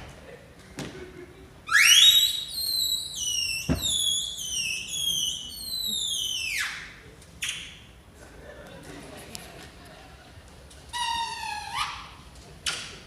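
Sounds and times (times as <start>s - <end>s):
shrill warbling whistle: 1.7s - 7.6s
thump: 3.7s - 4.0s.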